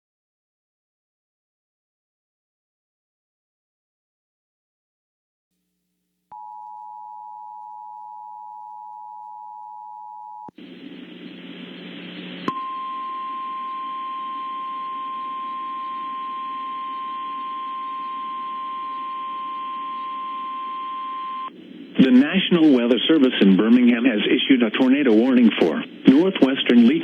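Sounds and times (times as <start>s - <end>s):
two-tone attention signal: 6.4s - 10.5s, 12.5s - 21.5s
steady warning alarm tone: 6.4s - 21.6s
radio static: 10.5s - 27.0s.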